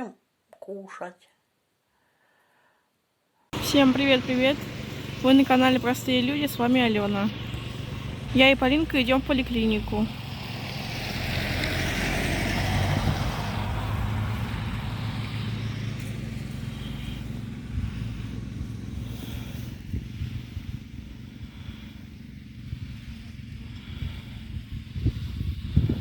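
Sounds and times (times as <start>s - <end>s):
motor vehicle passing: 3.6s - 26.0s
steady low rumble: 12.4s - 26.0s.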